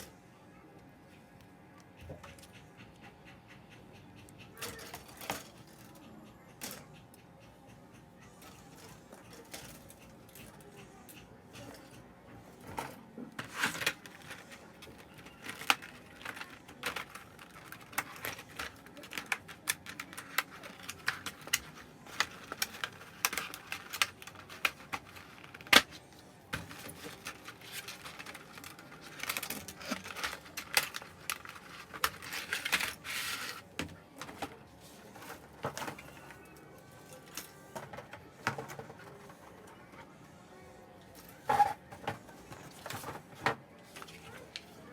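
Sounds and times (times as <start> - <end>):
packaging rustling: 13.4 - 33.8.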